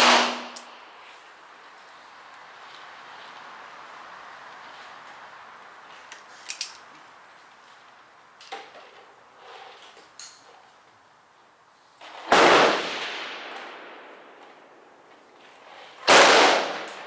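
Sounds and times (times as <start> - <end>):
loud revolver shot echoing: 0.0 - 0.7, 12.3 - 13.8, 16.1 - 17.0
small metallic clicks and knocks: 6.1 - 7.0, 9.8 - 10.7.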